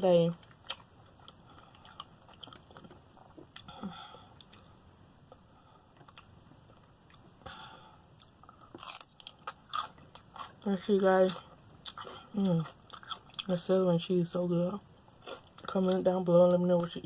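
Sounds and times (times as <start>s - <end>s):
person chewing food: 0.4s - 7.3s, 8.0s - 13.5s, 15.0s - 16.1s.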